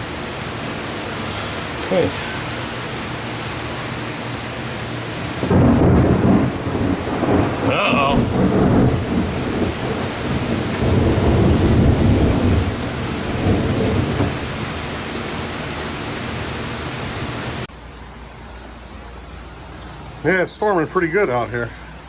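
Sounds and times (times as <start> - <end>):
heavy rain: 0.0 - 18.0
thunder rolling: 5.3 - 17.7.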